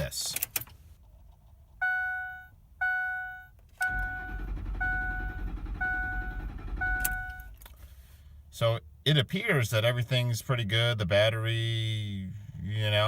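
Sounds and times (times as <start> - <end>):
dashboard warning chime: 1.8 - 7.6
starter cranking engine: 3.8 - 7.8.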